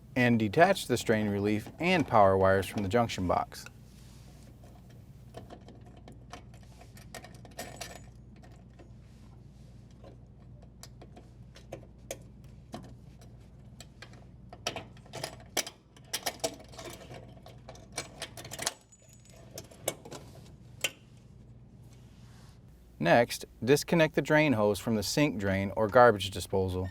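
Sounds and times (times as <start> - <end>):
steady low hum: 18.6 - 26.9.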